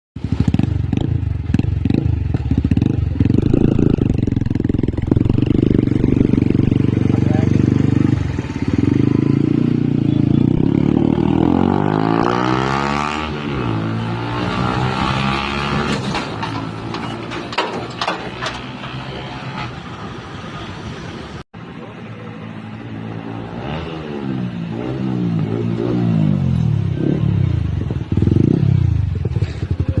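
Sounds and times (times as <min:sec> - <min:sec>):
motorcycle engine deep pulsing: 0:00.2 - 0:15.8, 0:24.8 - 0:30.0.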